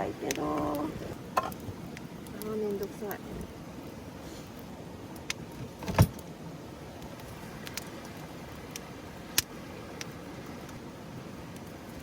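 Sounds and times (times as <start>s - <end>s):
low background noise: 0.0s - 12.0s.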